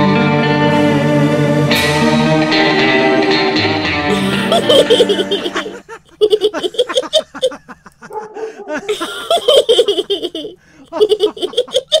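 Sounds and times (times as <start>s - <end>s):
hearty laughter: 4.1s - 12.0s.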